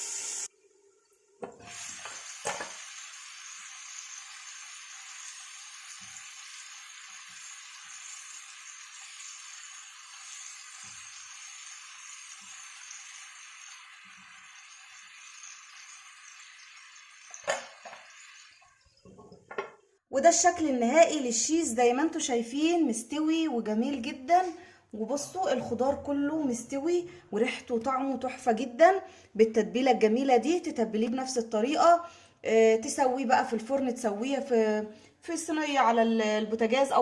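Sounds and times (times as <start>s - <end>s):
chicken sizzling in grill pan: 1.6s - 18.6s.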